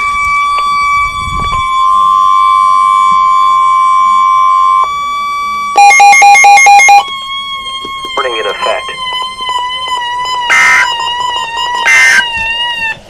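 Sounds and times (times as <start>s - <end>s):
steady alert tone: 5.8s - 7.0s
chattering data tones: 5.8s - 12.3s.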